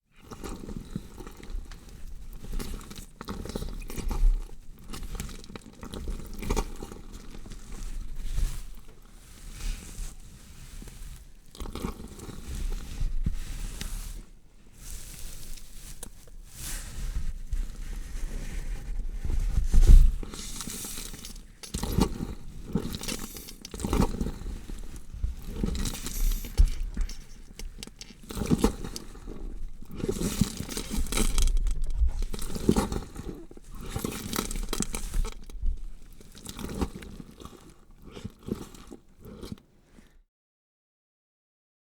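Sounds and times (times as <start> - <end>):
wet tearing and squishing: 20.4 - 39.6.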